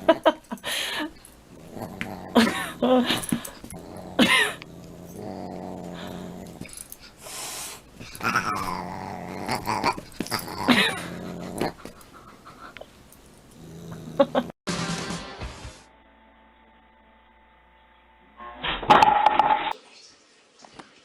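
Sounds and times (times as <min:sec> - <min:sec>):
cat growling: 0:01.5 - 0:06.9, 0:08.0 - 0:12.0, 0:13.5 - 0:14.5.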